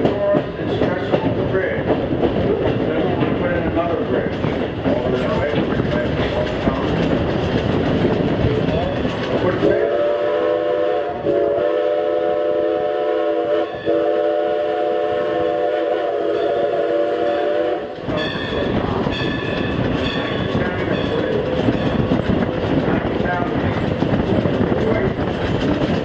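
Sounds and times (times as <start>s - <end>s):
train rolling on track: 0.0s - 26.0s
steam locomotive whistle: 9.6s - 18.6s.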